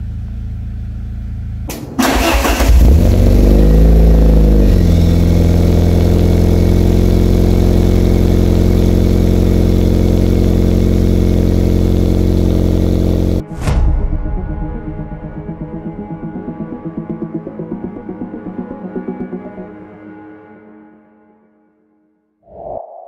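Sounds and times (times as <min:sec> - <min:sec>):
car engine revving and idling: 0:00.0 - 0:13.4.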